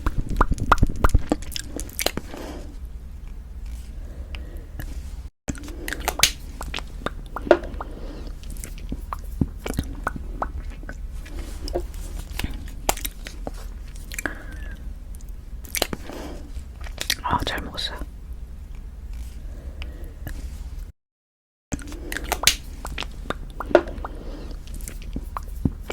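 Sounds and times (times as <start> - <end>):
lips smacking wet clicks: 0.0 - 2.7, 5.9 - 11.1, 11.7 - 16.2, 21.8 - 25.9.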